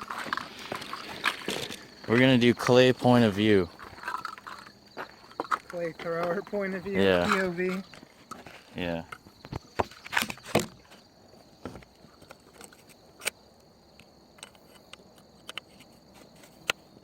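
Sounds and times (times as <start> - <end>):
quiet outdoor background: 0.0 - 17.0
handling knocks and clicks: 11.6 - 13.4.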